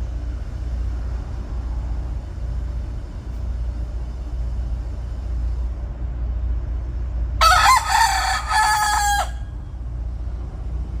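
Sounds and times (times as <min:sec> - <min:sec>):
steady low rumble: 0:00.0 - 0:11.0
rooster crowing: 0:07.4 - 0:09.7.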